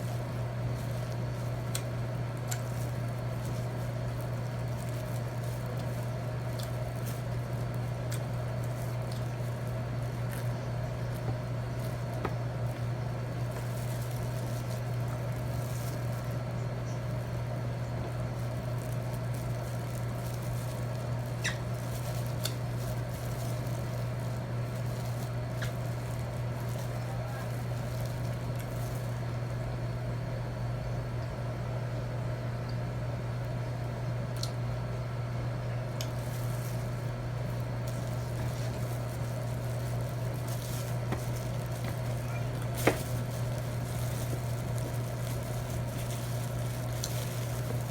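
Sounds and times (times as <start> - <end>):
low electrical hum: 0.0 - 47.9
chewing and utensil clicks: 2.5 - 2.8, 22.4 - 22.6, 34.4 - 34.6.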